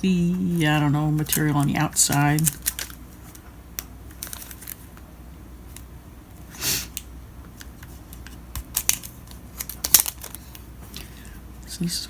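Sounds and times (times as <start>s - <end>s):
packaging rustle: 1.1s - 3.5s, 4.1s - 5.0s, 7.6s - 11.0s.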